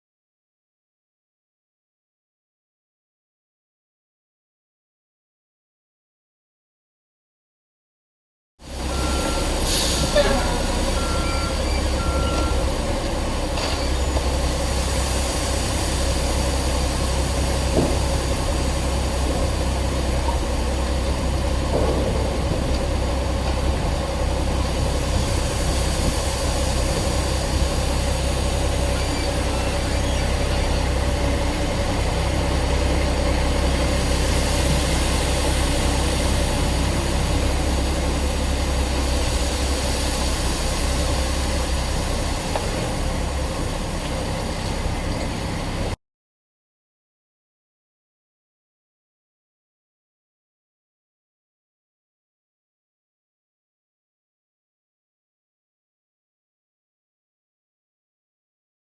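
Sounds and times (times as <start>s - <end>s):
diesel engine rumble: 8.6s - 46.0s.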